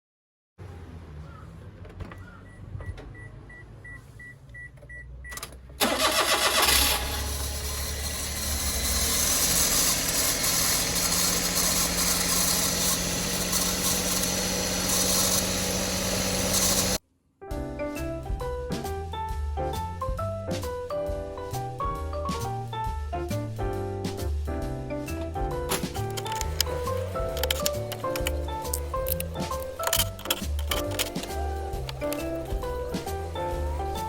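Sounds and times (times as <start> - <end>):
car engine starting and idling: 0.6 - 17.0, 25.2 - 34.0
worn alternator noise: 5.8 - 17.0, 25.8 - 34.0.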